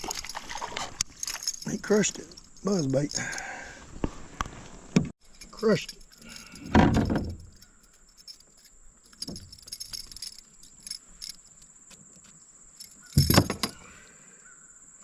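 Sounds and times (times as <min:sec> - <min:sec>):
light clicks and rattles: 0:05.2 - 0:13.8.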